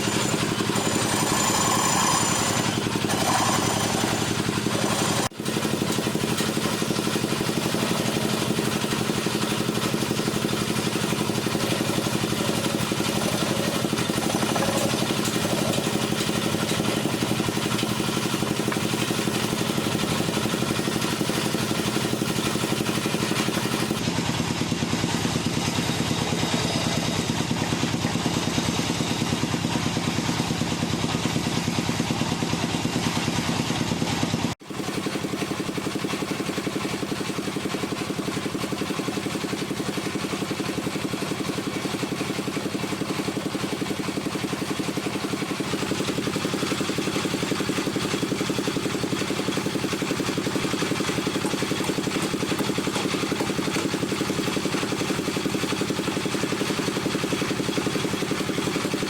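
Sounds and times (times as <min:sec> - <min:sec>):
wood lathe humming: 0:00.0 - 0:24.0, 0:45.1 - 0:59.0.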